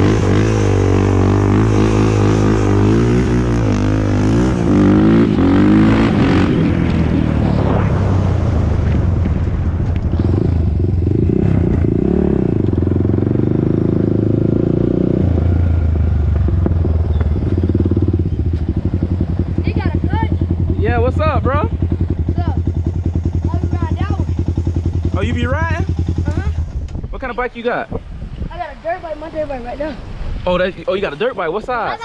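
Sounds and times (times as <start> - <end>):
engine running: 0.0 - 27.1.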